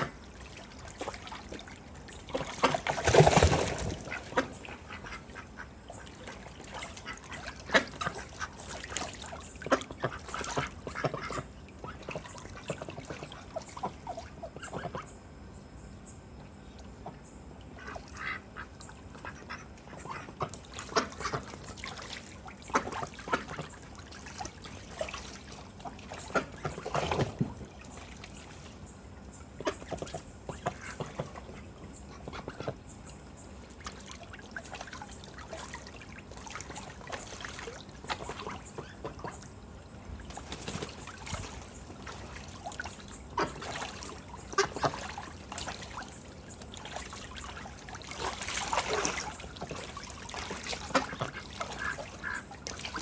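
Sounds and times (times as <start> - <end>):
water splashing in a tub: 0.0 - 15.0, 17.6 - 53.0
ducks quacking: 2.4 - 15.1, 17.0 - 22.0, 38.1 - 39.6, 41.1 - 46.0, 47.0 - 53.0.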